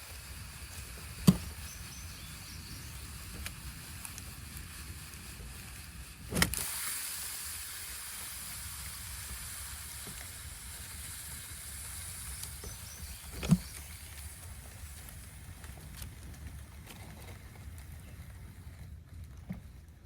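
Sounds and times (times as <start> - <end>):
wind rumble on microphone: 0.0 - 6.6
faint high hiss: 0.0 - 16.0.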